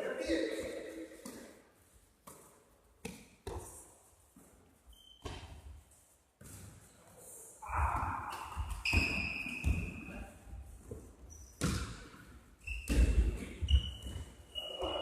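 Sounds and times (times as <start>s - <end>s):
basketball bouncing on gym floor: 7.7s - 10.1s, 10.8s - 14.4s
high squeak-like tone: 13.7s - 15.0s.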